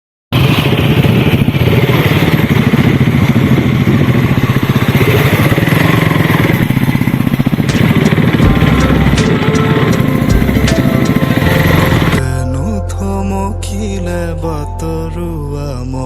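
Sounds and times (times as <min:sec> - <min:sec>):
engine running loudly: 0:00.3 - 0:12.3.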